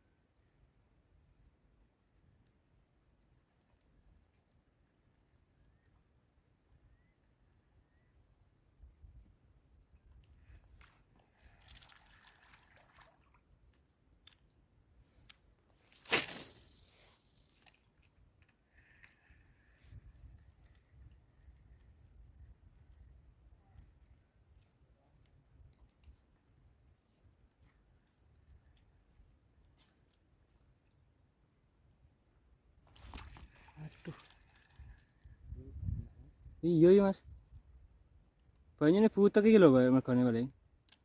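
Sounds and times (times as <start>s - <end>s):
sharp splash in water: 11.5s - 13.4s, 16.0s - 17.0s, 32.9s - 34.7s.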